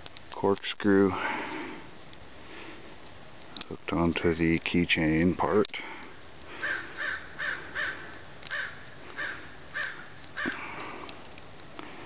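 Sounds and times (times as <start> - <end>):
bird calling: 6.5 - 11.1.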